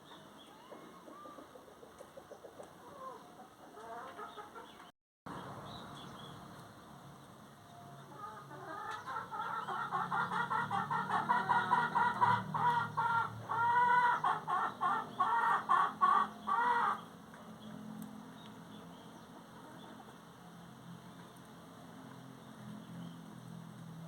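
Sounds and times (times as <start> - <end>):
chicken clucking: 0.4 - 4.9, 8.0 - 17.0.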